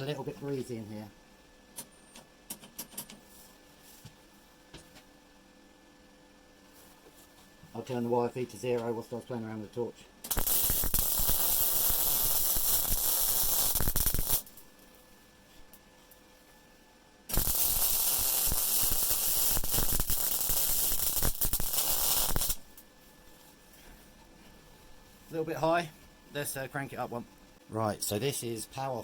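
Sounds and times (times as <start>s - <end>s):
welding arc crackling: 10.2s - 14.7s, 17.3s - 22.8s.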